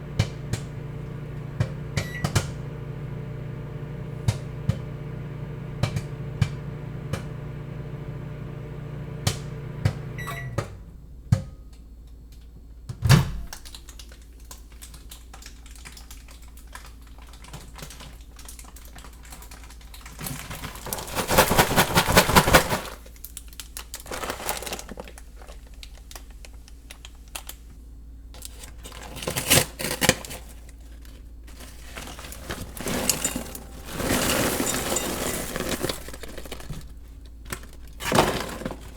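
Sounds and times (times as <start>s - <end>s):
popcorn popping: 0.0s - 10.7s, 13.5s - 26.4s, 31.5s - 38.9s
microwave oven running: 0.0s - 13.7s, 31.1s - 38.9s
rustling bag handling: 20.2s - 23.1s, 23.9s - 25.6s, 30.3s - 38.9s.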